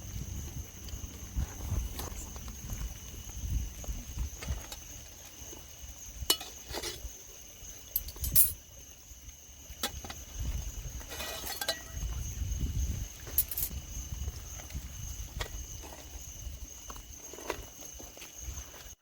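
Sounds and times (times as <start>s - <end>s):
tableware clinking: 8.0s - 8.6s, 11.2s - 12.0s.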